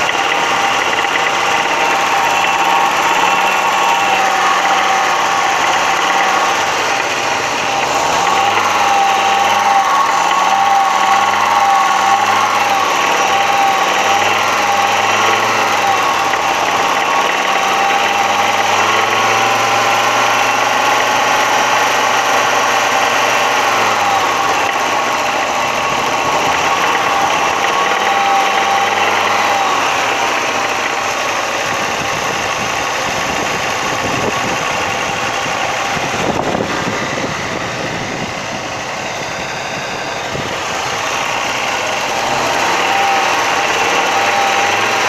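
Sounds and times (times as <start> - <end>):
five-cylinder engine revving: 0.0 - 45.0.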